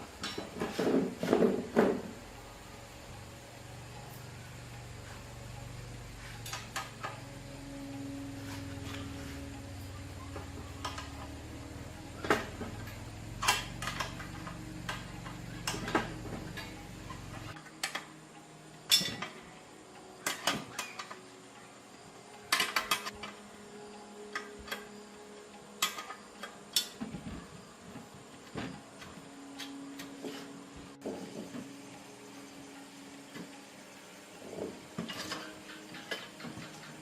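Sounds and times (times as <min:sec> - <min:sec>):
low steady hum: 0:00.0 - 0:37.0.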